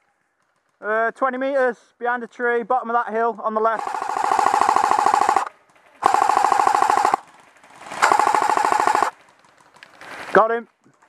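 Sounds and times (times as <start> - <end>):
airsoft gun firing full auto: 3.8 - 9.4.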